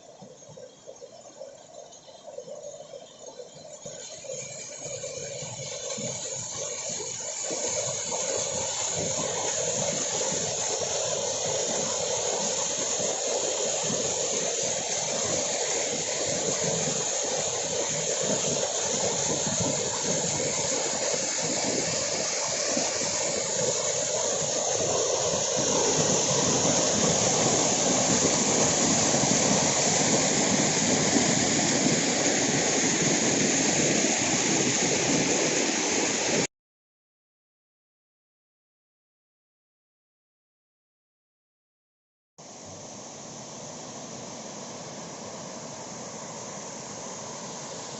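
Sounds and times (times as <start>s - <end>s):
waterfall rushing: 6.2s - 36.5s.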